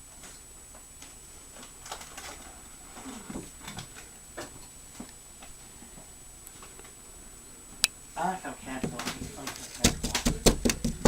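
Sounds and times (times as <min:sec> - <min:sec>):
kittens clicking and tapping: 0:08.8 - 0:11.0.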